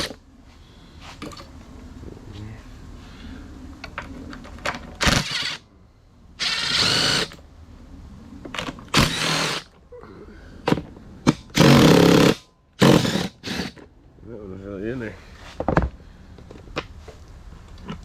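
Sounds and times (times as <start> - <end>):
impact driver running: 5.0 - 5.6, 6.4 - 7.4, 8.9 - 9.7, 11.5 - 13.8.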